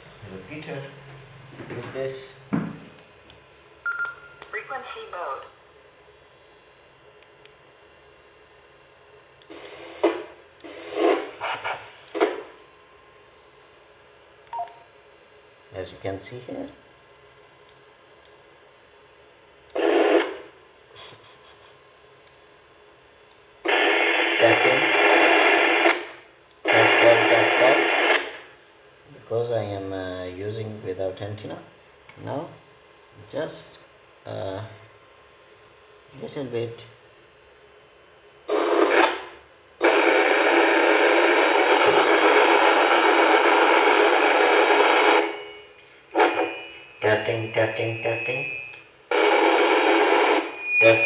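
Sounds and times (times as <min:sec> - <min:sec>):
radio static burst: 0:09.5 - 0:12.5, 0:19.8 - 0:20.5, 0:23.7 - 0:28.5, 0:38.5 - 0:45.6, 0:46.2 - 0:51.0.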